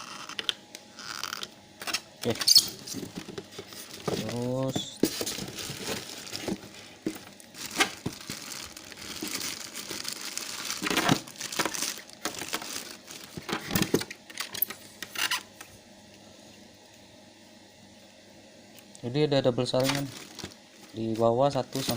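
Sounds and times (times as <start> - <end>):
plastic packaging crinkling: 1.0 - 15.4, 19.7 - 21.9.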